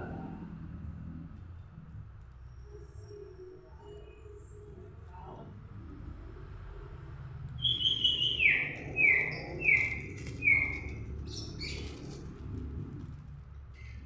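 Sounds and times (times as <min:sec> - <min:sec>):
songbird singing: 0:07.6 - 0:12.3.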